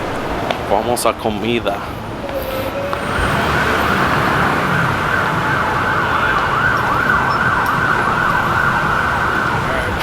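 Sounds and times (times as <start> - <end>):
street traffic noise: 0.0 - 10.0
siren yelping: 2.2 - 10.0.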